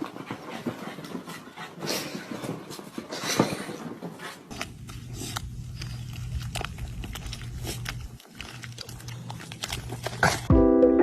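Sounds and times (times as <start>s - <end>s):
dog breathing noisily: 0.0s - 6.1s.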